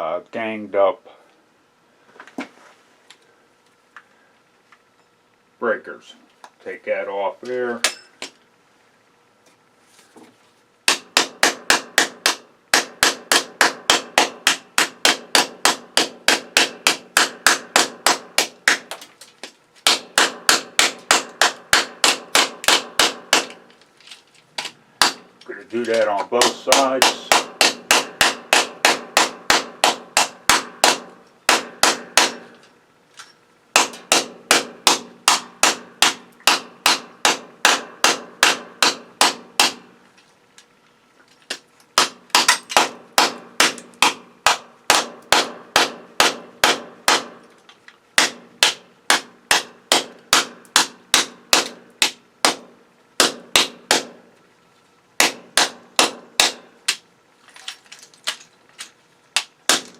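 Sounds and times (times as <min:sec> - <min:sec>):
hammer striking metal: 0:07.8 - 0:08.3, 0:10.9 - 0:18.9, 0:19.8 - 0:23.6, 0:25.8 - 0:32.6, 0:33.8 - 0:39.8, 0:42.0 - 0:47.4, 0:48.2 - 0:54.2, 0:55.2 - 0:57.0, 0:59.4 - 0:59.9.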